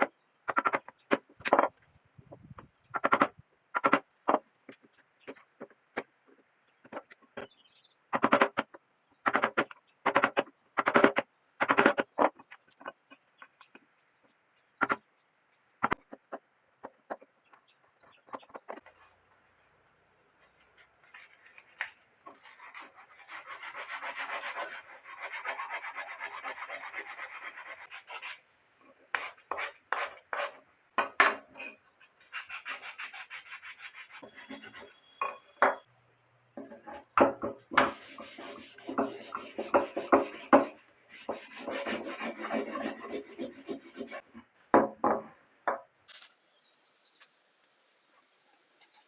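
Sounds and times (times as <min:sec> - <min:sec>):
rasping on wood: 0:22.3 - 0:28.4, 0:32.3 - 0:35.0, 0:37.8 - 0:44.3.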